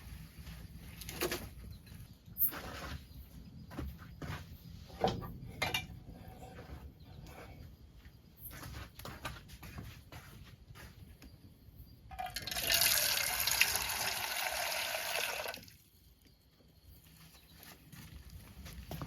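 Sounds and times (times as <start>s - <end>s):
water pouring: 12.2s - 15.8s.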